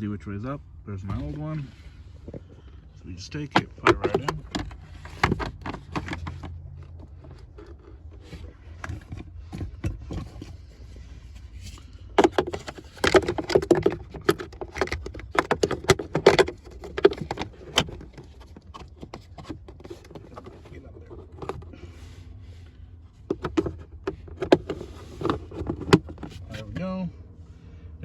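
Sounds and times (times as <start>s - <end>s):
low steady hum: 0.0s - 28.0s
filter scraping and rustling: 1.0s - 26.9s
sharp plastic clicks and knocks: 12.2s - 21.8s.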